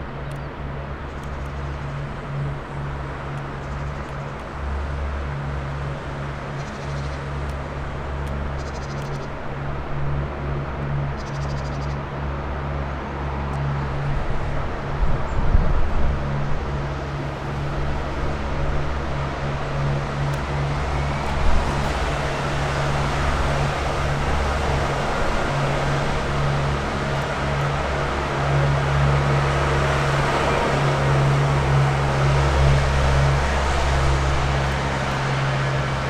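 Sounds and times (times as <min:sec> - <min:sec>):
faint rising whine: 0:18.3 - 0:36.0.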